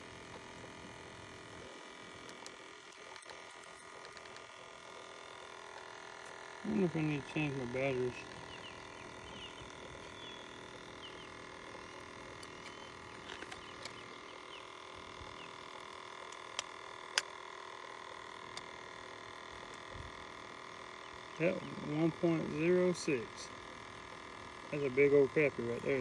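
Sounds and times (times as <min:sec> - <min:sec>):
electrical hum: 0:00.0 - 0:26.0
sharp clicks: 0:02.2 - 0:04.6, 0:12.2 - 0:14.6, 0:15.2 - 0:17.4.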